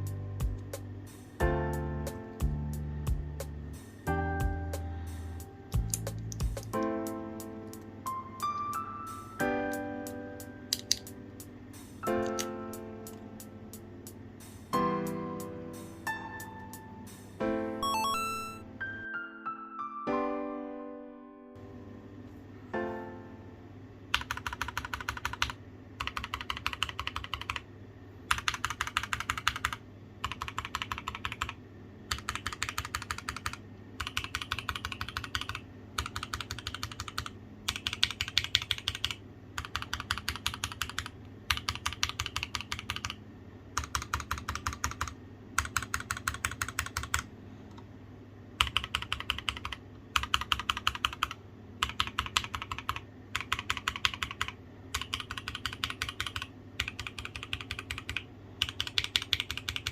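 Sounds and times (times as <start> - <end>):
mechanical keyboard typing: 5.8 - 6.9, 10.7 - 11.1, 12.0 - 13.2, 24.1 - 27.7, 28.3 - 47.3, 48.6 - 59.9.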